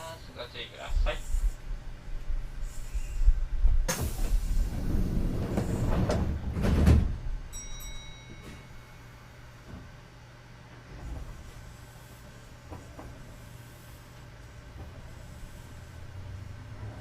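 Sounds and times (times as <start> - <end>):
train low rumble: 0.0 - 17.0
train doors closing thud: 3.9 - 7.4.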